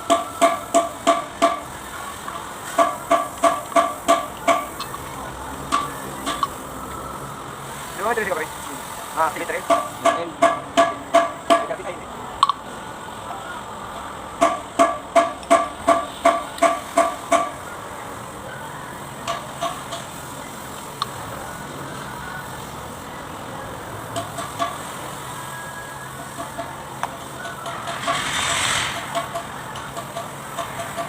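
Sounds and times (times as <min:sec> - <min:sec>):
hammer tapping on metal: 0:00.1 - 0:01.7, 0:02.7 - 0:05.0, 0:05.7 - 0:06.6, 0:09.6 - 0:11.8, 0:14.4 - 0:17.6, 0:29.0 - 0:31.0.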